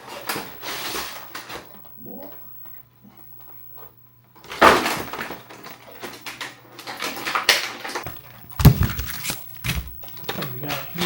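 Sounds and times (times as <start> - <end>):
packaging rustling and tearing: 8.6 - 10.1.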